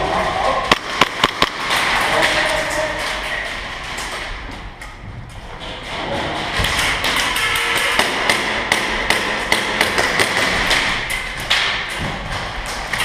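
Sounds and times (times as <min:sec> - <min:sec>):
airsoft gunfire clacks: 0:00.7 - 0:02.6.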